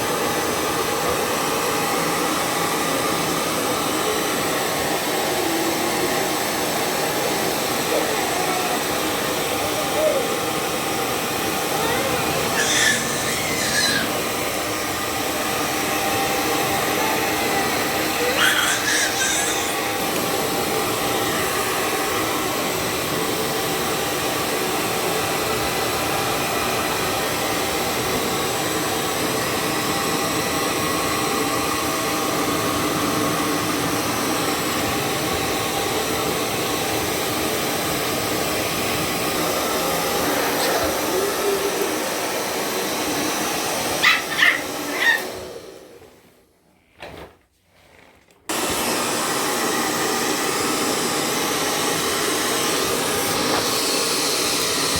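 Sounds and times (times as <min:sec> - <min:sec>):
hair dryer blowing: 0:00.0 - 0:46.4, 0:48.5 - 0:54.9
dog barking: 0:12.5 - 0:14.1, 0:18.2 - 0:19.8, 0:44.0 - 0:45.3.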